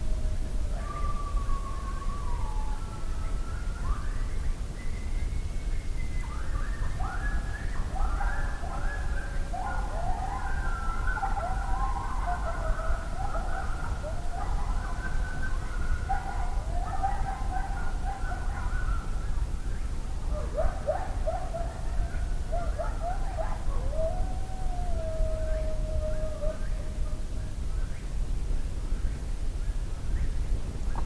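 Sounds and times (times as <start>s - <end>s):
coyotes howling: 0.3s - 3.8s, 6.5s - 27.6s.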